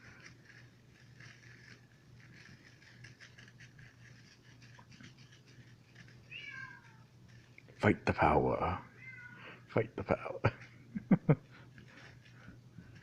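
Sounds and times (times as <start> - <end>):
kitten scratching at a toy: 0.0 - 7.8, 11.4 - 13.0
steady low hum: 0.0 - 13.0.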